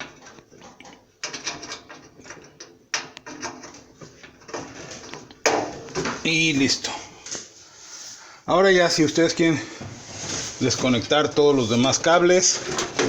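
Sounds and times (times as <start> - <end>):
clicks and rattles of parts handled: 0.0 - 6.2, 12.4 - 13.0.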